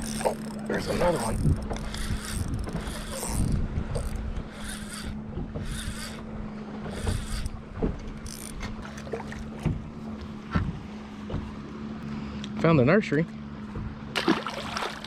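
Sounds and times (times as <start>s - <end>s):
fishing reel grinding: 0.0s - 7.6s, 8.2s - 8.6s
steady low hum: 0.0s - 14.9s
person talking: 0.7s - 1.4s.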